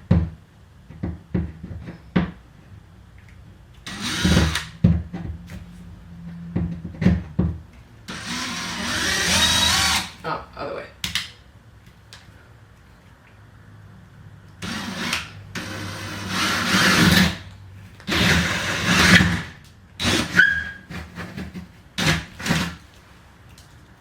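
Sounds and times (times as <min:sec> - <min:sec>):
power tool working into wood: 0:03.8 - 0:04.8, 0:08.1 - 0:10.2, 0:14.6 - 0:20.9.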